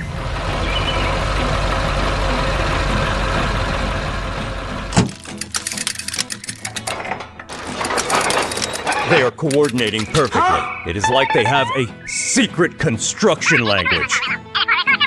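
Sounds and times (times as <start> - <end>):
truck engine rumbling: 0.0 - 12.8
quick clicks and rattles: 5.0 - 10.4.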